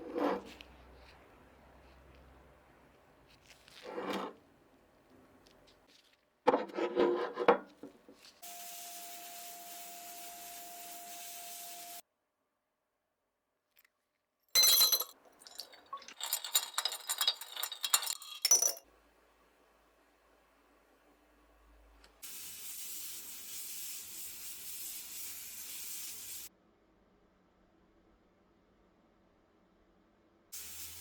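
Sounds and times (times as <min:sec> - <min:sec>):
steady hiss: 0:08.2 - 0:12.0, 0:22.1 - 0:26.5, 0:30.6 - 0:31.0
metal pieces clinking: 0:14.6 - 0:18.8.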